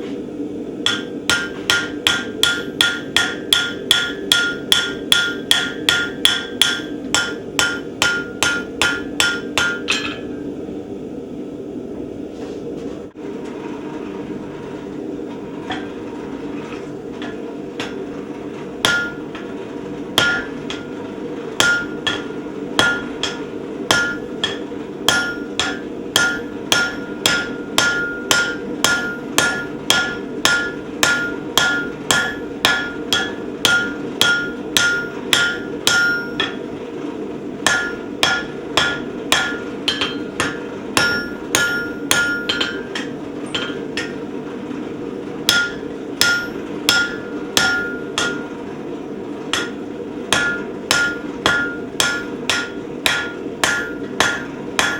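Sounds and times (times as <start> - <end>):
machine hum: 0.0 - 54.9
trip hammer blows ringing: 0.9 - 10.4, 18.8 - 19.5, 20.2 - 21.0, 21.6 - 36.7, 37.6 - 44.2, 45.5 - 48.6, 49.5 - 54.9.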